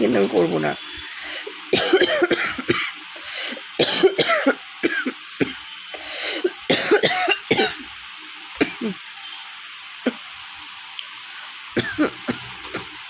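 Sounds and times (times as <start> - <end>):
woman coughing hoarsely: 1.8 - 2.9, 3.8 - 5.6, 6.4 - 7.8, 8.6 - 9.0, 11.8 - 12.9.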